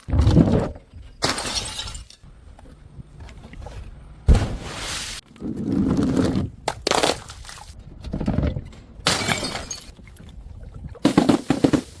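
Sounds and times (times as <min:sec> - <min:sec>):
glass bottles smashing: 0:01.2 - 0:02.2, 0:09.0 - 0:10.0.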